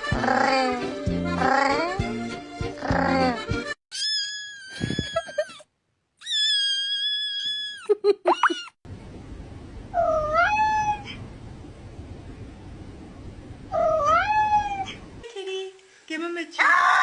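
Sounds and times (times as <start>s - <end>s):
cats meowing: 2.8s - 5.6s, 6.2s - 7.9s, 10.0s - 11.2s, 13.7s - 15.0s.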